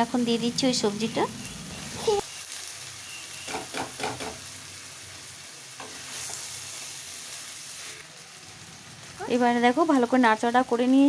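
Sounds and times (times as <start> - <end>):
vegetables sizzling in oil: 0.0 - 11.0
stirring strokes in pan: 5.8 - 8.1.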